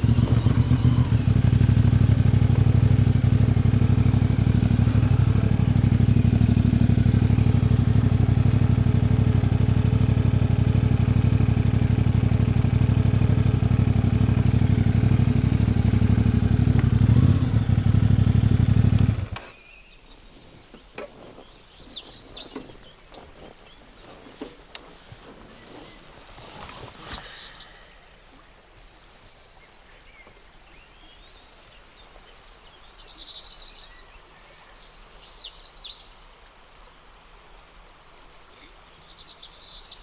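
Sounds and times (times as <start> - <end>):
bird chirping: 0.0 - 10.4, 14.5 - 24.5, 25.4 - 36.7
vehicle engine running: 0.0 - 19.5.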